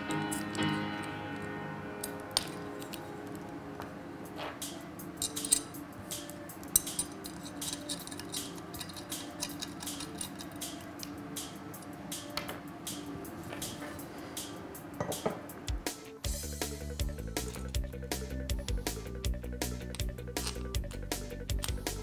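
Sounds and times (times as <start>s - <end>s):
background music: 0.0s - 22.0s
small metal parts clinking: 5.2s - 5.8s, 6.7s - 10.8s, 19.9s - 20.8s.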